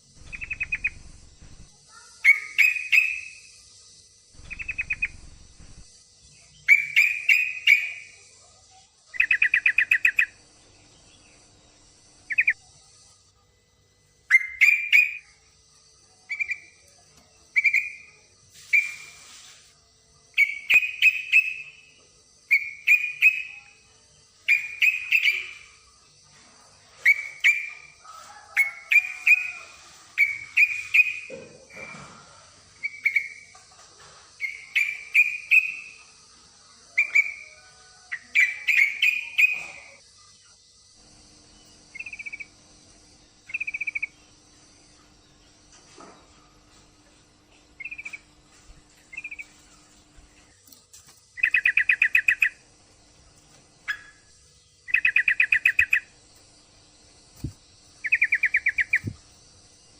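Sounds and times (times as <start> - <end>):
bird rattling trill: 0.1 - 3.4, 4.4 - 6.0, 57.2 - 59.3
bird chirping in bubbly phrases: 0.2 - 3.5, 4.4 - 8.2, 9.1 - 11.5, 12.2 - 12.7, 51.4 - 52.6, 53.9 - 56.1, 58.0 - 59.2.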